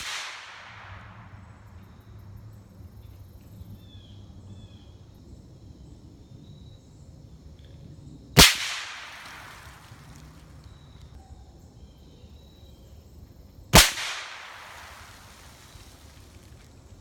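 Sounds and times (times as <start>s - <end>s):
rifle shots with echo: 0.0s - 1.6s, 8.4s - 10.2s, 13.8s - 15.6s.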